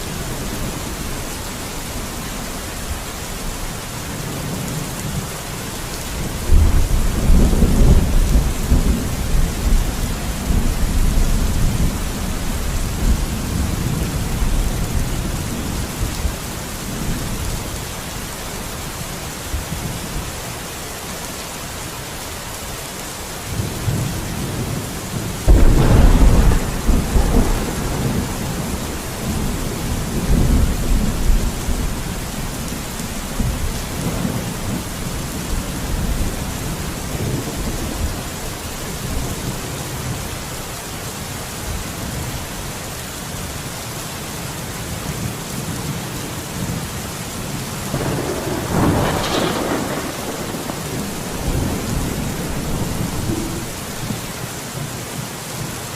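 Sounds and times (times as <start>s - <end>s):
steady rain: 0.0s - 55.9s
thunder rumbling: 6.1s - 17.6s, 23.5s - 39.6s, 47.9s - 54.3s.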